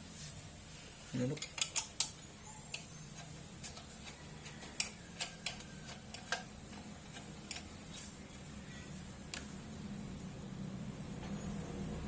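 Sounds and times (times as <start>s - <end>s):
faint steady hum: 0.0s - 12.0s
metallic tool clicks and taps: 1.4s - 3.9s, 4.5s - 7.7s.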